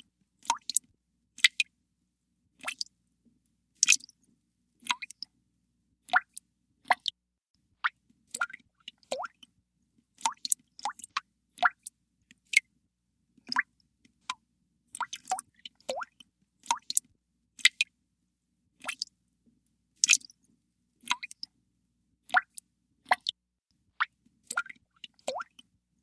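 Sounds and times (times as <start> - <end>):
water drops plinking into water: 2.6 - 2.9, 4.9 - 5.3, 6.1 - 7.2, 7.8 - 9.5, 13.5 - 14.4, 15.0 - 17.9, 18.8 - 19.1, 24.0 - 25.7.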